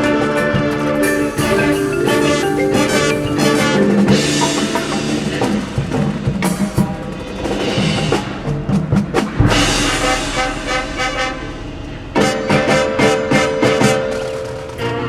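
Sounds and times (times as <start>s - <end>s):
marching band playing: 0.0s - 15.0s
snare and bass drums: 0.0s - 15.0s
heavy low drum hit: 4.1s - 14.4s.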